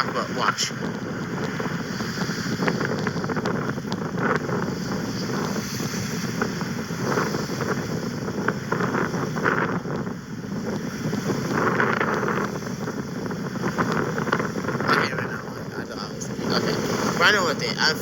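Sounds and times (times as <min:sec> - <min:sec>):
surf washing: 0:00.0 - 0:18.0
wind buffeting microphone: 0:00.0 - 0:18.0.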